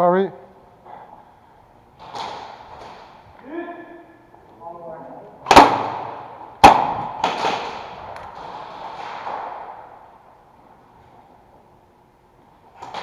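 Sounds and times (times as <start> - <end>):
long echo: 3.4 - 8.3
loud sharp bang: 5.5 - 7.9
faint cracks: 6.9 - 11.3.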